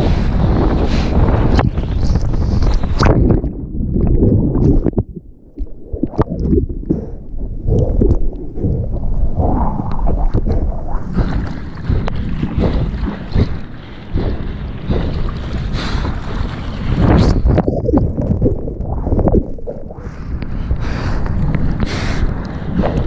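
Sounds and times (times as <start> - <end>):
wind buffeting microphone: 0.0 - 23.0
seawater splashing and sloshing: 9.6 - 19.5.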